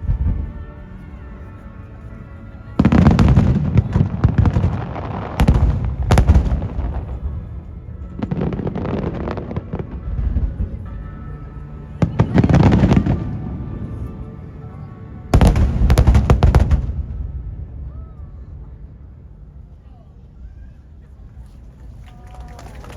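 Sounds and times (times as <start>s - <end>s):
firework crackling: 2.8s - 10.6s
firework shells booming: 2.9s - 7.6s, 15.4s - 17.2s.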